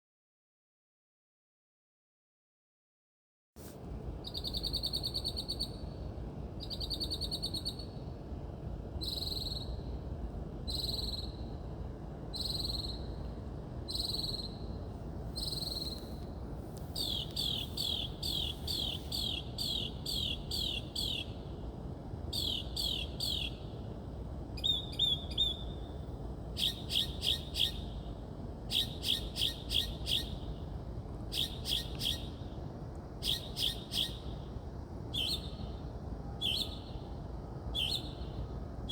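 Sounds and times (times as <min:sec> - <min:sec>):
low background hum: 0:03.6 - 0:38.9
songbird singing: 0:04.2 - 0:05.9, 0:06.6 - 0:08.0, 0:09.0 - 0:10.0, 0:10.7 - 0:11.5, 0:12.3 - 0:13.2, 0:13.8 - 0:21.6, 0:22.3 - 0:23.9, 0:24.6 - 0:32.5, 0:33.2 - 0:34.5, 0:35.1 - 0:38.9.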